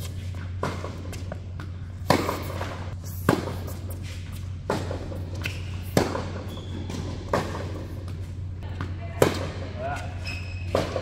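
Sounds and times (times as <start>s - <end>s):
steady low hum: 0.0s - 11.0s
tennis ball bouncing on court: 0.2s - 10.0s
tennis ball struck by rackets: 0.4s - 3.8s, 4.6s - 9.7s.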